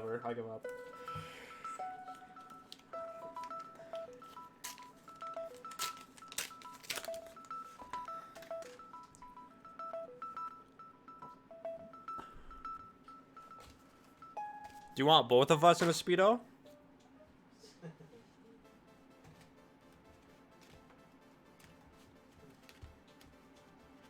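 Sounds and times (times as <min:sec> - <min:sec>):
electronic beeping melody: 0:00.0 - 0:15.8.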